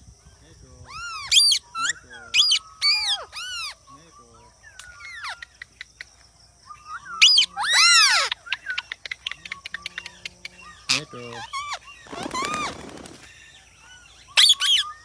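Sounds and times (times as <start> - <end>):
parrots squawking: 0.9 - 3.8, 6.9 - 9.3, 10.6 - 13.3, 14.4 - 15.0
parrot chirps and clicks: 8.3 - 10.6.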